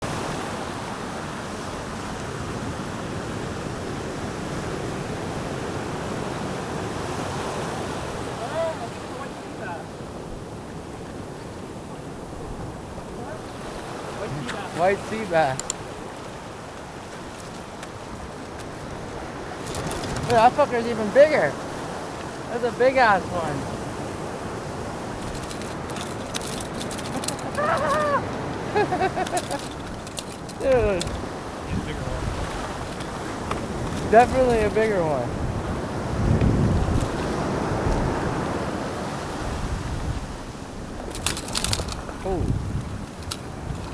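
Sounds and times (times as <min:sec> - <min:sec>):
ocean surf washing onto beach: 0:00.0 - 0:43.9
wind: 0:00.0 - 0:43.9
short wavering calls: 0:27.5 - 0:29.3.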